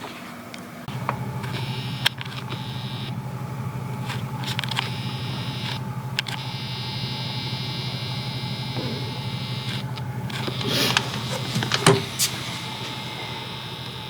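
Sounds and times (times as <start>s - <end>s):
low mechanical hum: 0.0s - 14.0s
clicks: 4.0s - 6.6s, 9.0s - 14.0s
high hiss: 10.4s - 14.0s.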